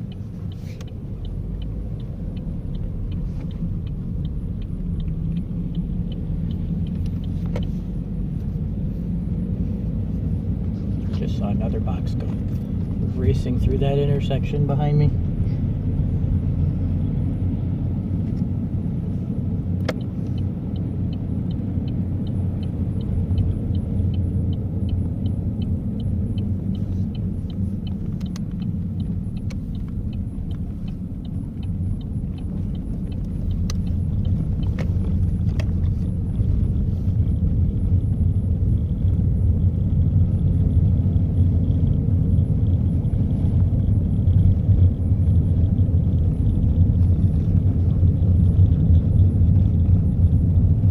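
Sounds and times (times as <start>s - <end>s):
evenly spaced ticks: 0.0s - 7.7s, 19.9s - 36.7s
car engine and road rumble: 0.0s - 50.9s.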